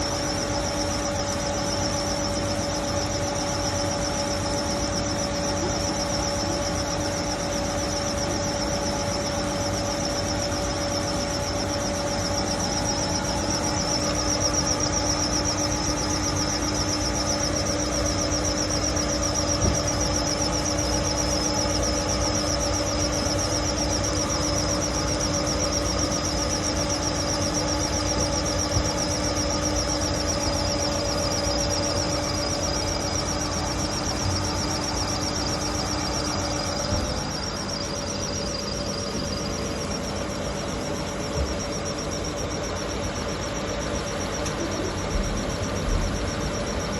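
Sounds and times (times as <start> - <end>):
washing machine spinning: 0.0 - 46.9.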